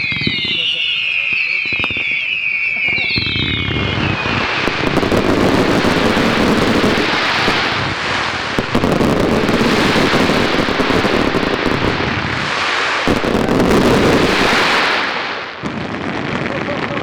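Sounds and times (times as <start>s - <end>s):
fireworks barrage: 0.0s - 17.0s.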